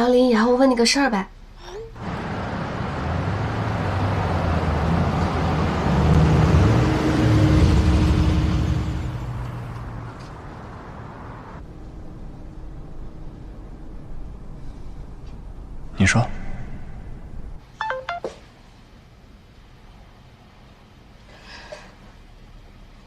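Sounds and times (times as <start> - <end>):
car driving past: 2.0 - 11.6.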